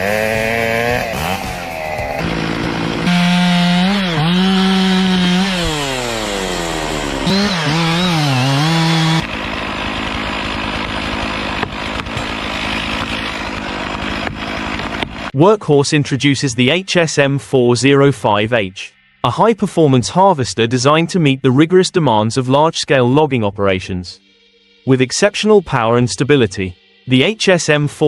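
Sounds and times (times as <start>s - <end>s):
chainsaw cutting wood: 0.0s - 15.3s.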